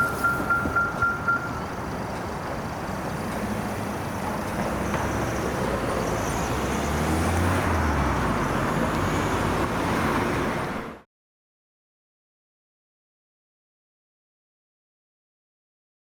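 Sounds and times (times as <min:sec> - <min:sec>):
motor vehicles passing: 0:00.0 - 0:11.0.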